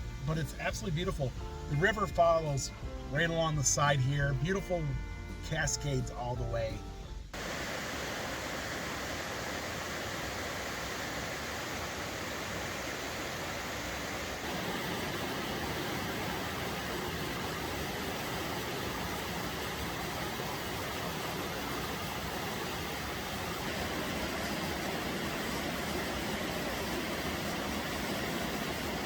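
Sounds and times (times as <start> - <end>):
river rushing: 7.4 - 29.0.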